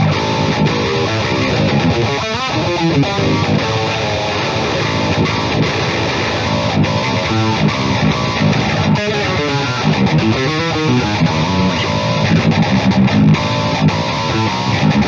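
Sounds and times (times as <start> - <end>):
distorted electric guitar riff: 0.0 - 15.0.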